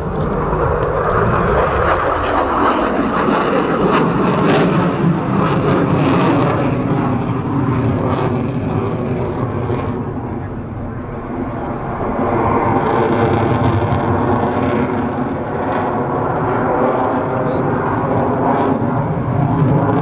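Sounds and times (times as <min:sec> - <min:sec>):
engine crackles: 0:00.0 - 0:03.1, 0:08.8 - 0:15.4
jet engines passing loud: 0:00.0 - 0:20.0.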